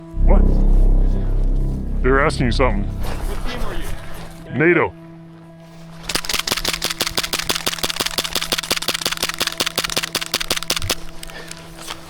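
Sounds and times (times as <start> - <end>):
airsoft gun full-auto burst: 6.1 - 11.4.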